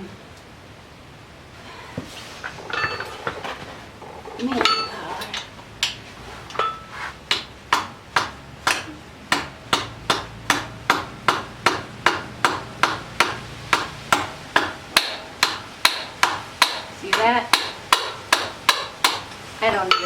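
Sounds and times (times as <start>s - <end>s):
hammer striking metal exhaust: 5.8s - 20.0s.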